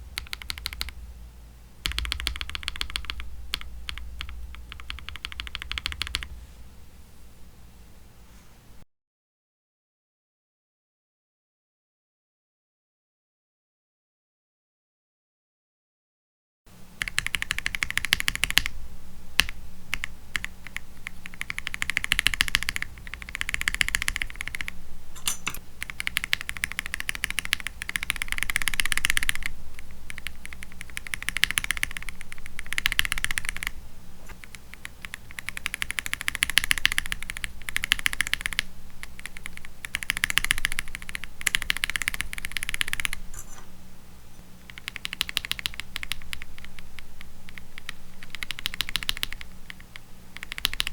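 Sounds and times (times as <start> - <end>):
mechanical keyboard typing: 0.2 - 1.0, 1.8 - 6.3, 17.0 - 18.7, 19.4 - 29.5, 30.1 - 33.7, 34.4 - 43.5, 44.7 - 50.9.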